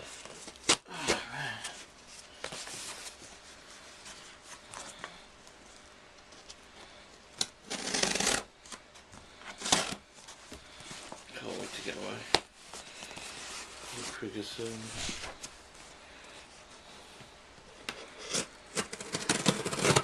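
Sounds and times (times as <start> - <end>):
scraping rustle: 10.8 - 15.5
packaging clicks and rustling: 18.3 - 20.0.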